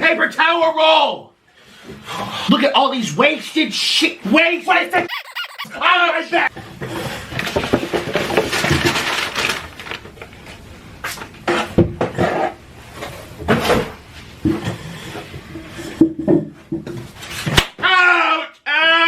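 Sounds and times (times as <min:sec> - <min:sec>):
short cries: 0:05.1 - 0:05.8.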